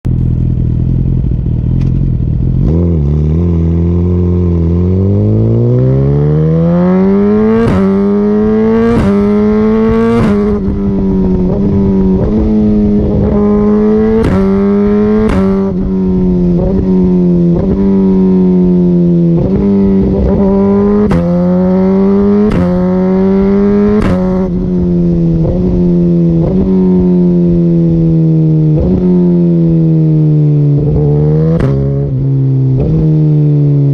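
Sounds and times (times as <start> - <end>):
motorcycle engine revving: 0.1 - 33.9
exhaust pops: 1.6 - 2.2, 21.0 - 21.4.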